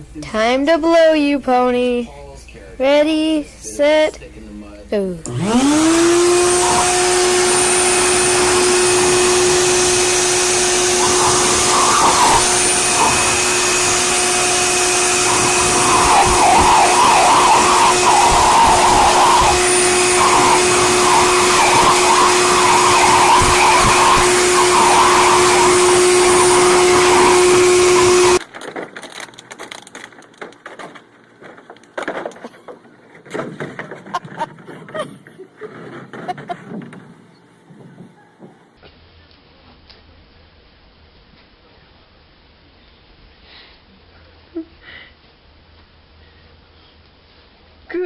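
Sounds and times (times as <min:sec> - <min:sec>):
blower motor whining: 0:05.2 - 0:30.7
scattered clicks and knocks: 0:28.4 - 0:37.2.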